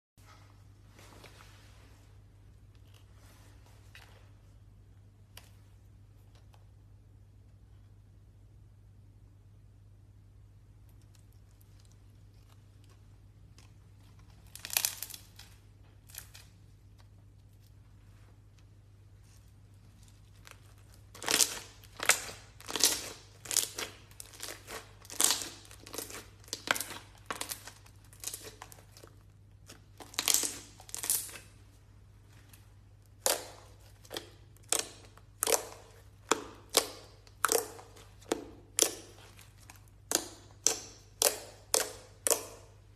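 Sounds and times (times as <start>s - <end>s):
slime crackling pops: 33.1s - 42.6s.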